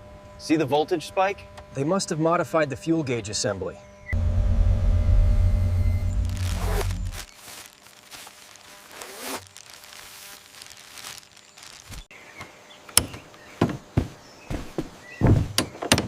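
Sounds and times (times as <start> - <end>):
rustling handling noises: 6.3 - 15.5.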